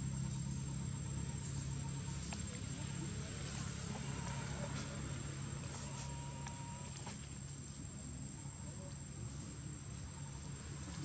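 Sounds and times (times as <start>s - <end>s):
low hum: 0.0s - 5.6s
insects trilling: 0.0s - 11.0s.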